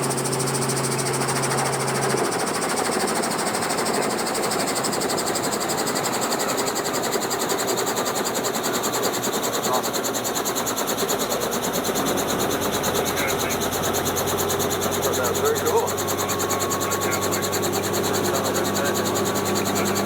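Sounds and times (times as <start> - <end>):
helicopter rotor blades chopping: 0.0 - 20.0
piston engine drone: 11.6 - 20.0.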